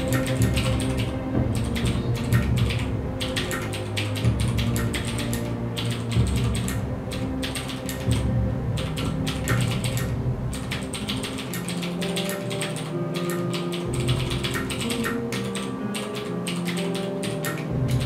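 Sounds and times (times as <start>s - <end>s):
clicky keyboard keystrokes: 10.7s - 18.0s.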